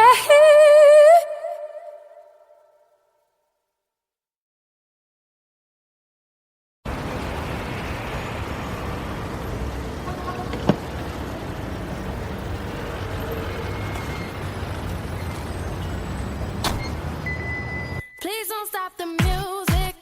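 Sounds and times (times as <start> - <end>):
traffic rumble: 6.9 - 18.0.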